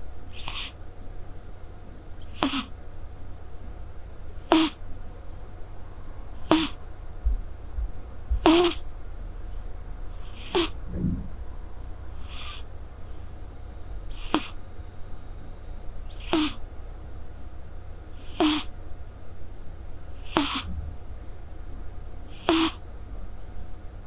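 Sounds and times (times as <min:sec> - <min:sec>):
cat snoring: 0:00.3 - 0:00.8, 0:02.3 - 0:02.7, 0:04.4 - 0:04.8, 0:06.3 - 0:06.8, 0:08.4 - 0:08.8, 0:10.1 - 0:13.3, 0:14.0 - 0:14.7, 0:16.0 - 0:16.6, 0:18.2 - 0:18.7, 0:20.2 - 0:21.0, 0:22.3 - 0:22.8.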